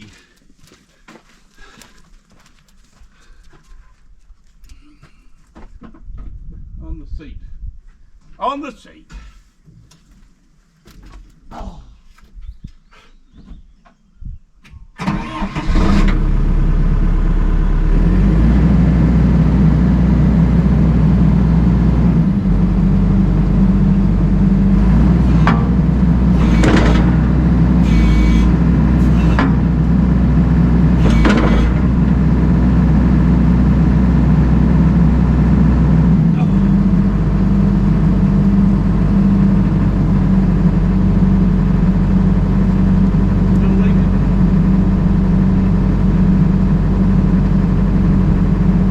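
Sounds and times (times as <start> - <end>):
engine starter cranking: 15.0 - 17.3, 24.7 - 33.9
excavator engine idling: 15.1 - 48.9.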